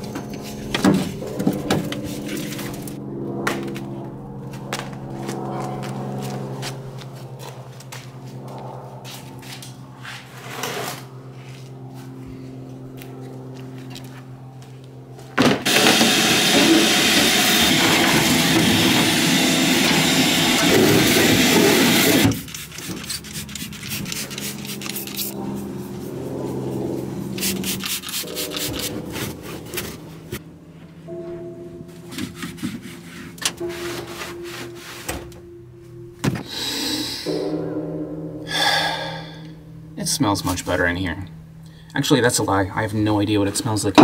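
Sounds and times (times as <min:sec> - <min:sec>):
rough rubbing or scraping noise: 0:10.0 - 0:11.1, 0:21.6 - 0:30.4, 0:32.1 - 0:35.2
soft background music: 0:25.3 - 0:43.7.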